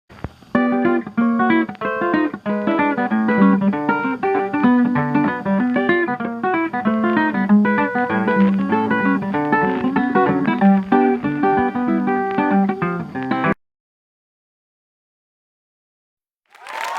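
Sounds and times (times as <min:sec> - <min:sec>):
plucked guitar tune: 0:00.3 - 0:13.6.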